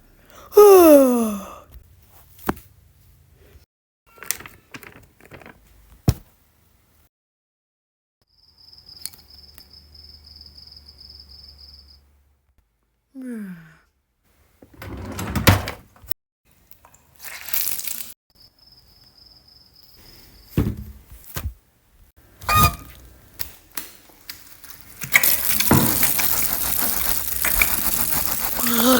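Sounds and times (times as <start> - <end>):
sharp thunks and knocks: 20.6 - 21.6
brief falling squeak: 22.5 - 22.9.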